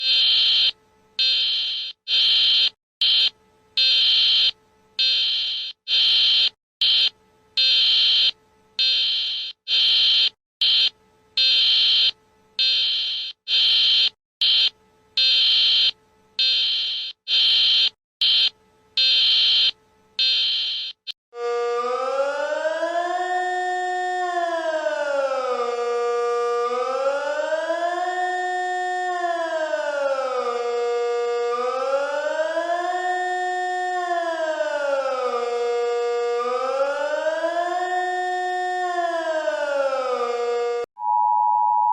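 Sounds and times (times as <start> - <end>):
electronic alarm buzzing: 0.0 - 21.9.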